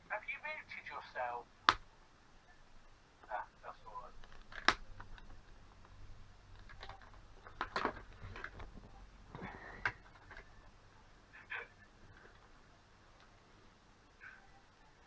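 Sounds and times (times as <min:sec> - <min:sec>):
low steady hum: 0:00.0 - 0:15.0
plastic and metal parts clicking: 0:04.2 - 0:10.5.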